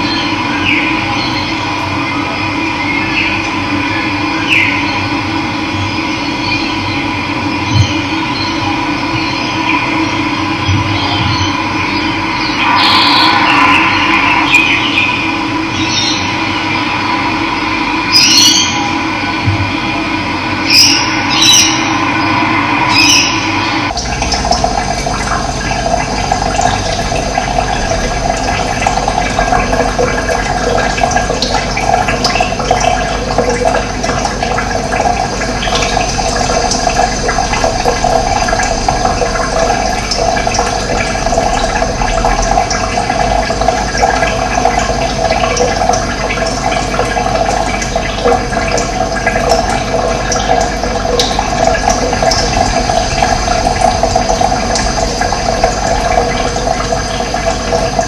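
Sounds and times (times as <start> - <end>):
running water rushing: 7.8 - 58.0.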